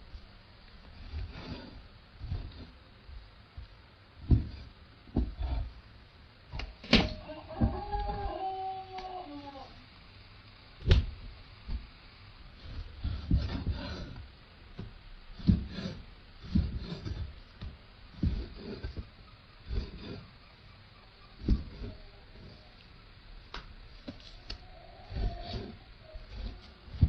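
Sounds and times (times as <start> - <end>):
knocks and thuds: 4.2 - 5.7, 14.8 - 19.1, 21.4 - 21.9.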